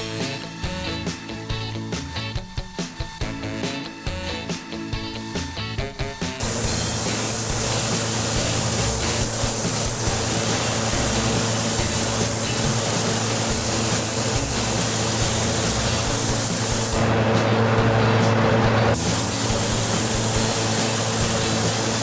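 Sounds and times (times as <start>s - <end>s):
music: 0.0s - 22.0s
paint spray gun hissing: 6.4s - 17.1s, 19.0s - 22.0s.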